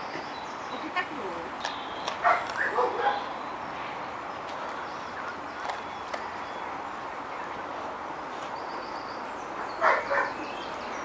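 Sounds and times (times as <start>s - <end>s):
steady outdoor hiss: 0.0s - 11.0s
faint bird chirp: 1.6s - 11.0s
dog barking: 2.2s - 3.3s, 9.7s - 10.4s.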